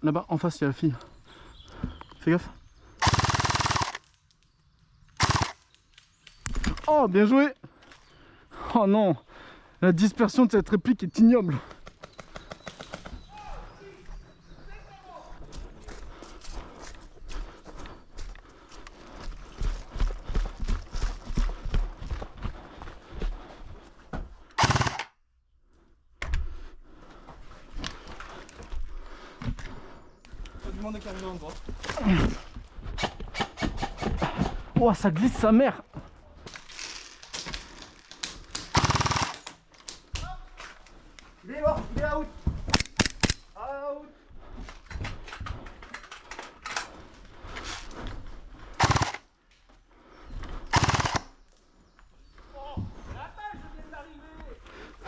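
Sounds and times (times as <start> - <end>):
airsoft gun burst: 3.0 - 4.0, 5.2 - 5.6, 24.6 - 25.1, 38.7 - 39.4, 48.8 - 49.2, 50.7 - 51.3
footsteps: 13.0 - 24.5, 39.9 - 42.8.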